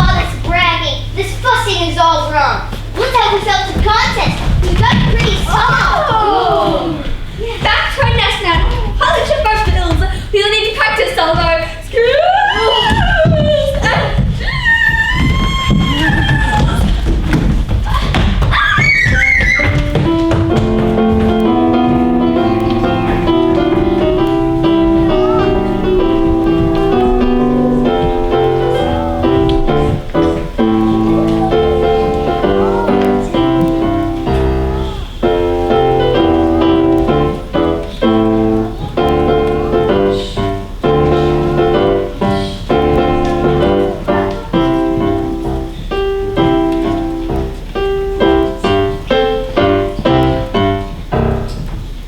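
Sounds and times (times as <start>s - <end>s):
keyboard instrumental music: 19.4s - 51.6s.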